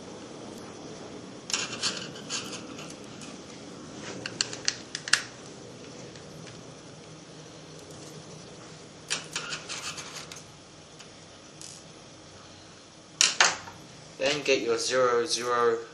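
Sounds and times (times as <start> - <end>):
low hiss: 0.0 - 15.9.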